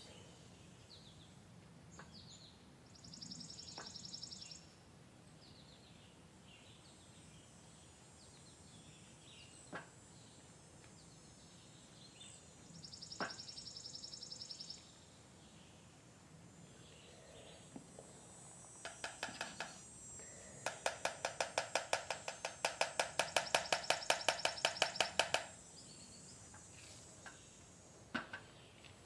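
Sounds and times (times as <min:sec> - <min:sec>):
songbirds chirping: 0:00.0 - 0:29.0
buzzy high bird trills: 0:22.1 - 0:25.4.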